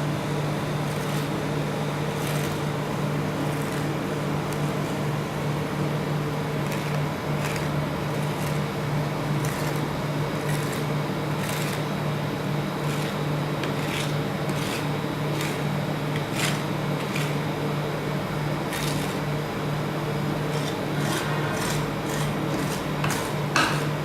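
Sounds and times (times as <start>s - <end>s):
cold plate machine humming: 0.0s - 24.0s
metal spatulas scraping plate: 20.5s - 24.0s.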